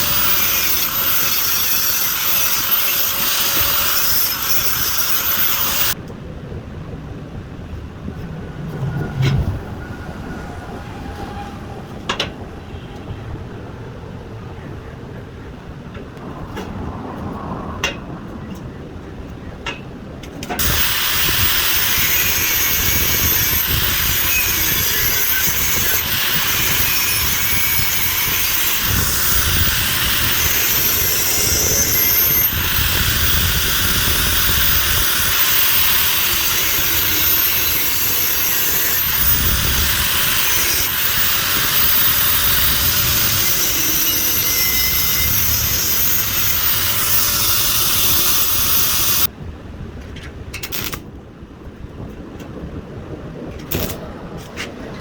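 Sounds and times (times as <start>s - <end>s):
welding arc crackling and hissing: 0.0s - 6.0s.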